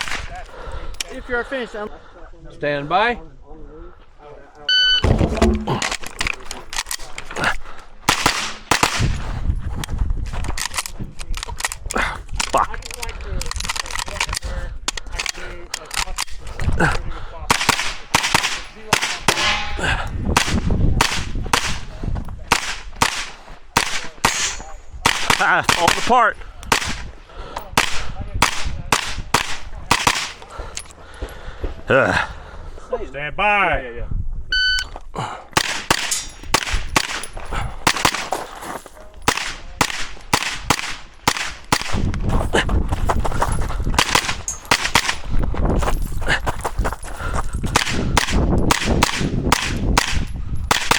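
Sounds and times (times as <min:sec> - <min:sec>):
carbine firing shots: 0:00.0 - 0:00.4, 0:05.0 - 0:07.0, 0:08.0 - 0:09.3, 0:17.5 - 0:21.9, 0:22.5 - 0:27.2, 0:27.8 - 0:30.5, 0:35.6 - 0:38.4, 0:39.3 - 0:42.1, 0:44.0 - 0:45.3, 0:47.8 - 0:50.9
rapid gunfire: 0:08.1 - 0:09.2.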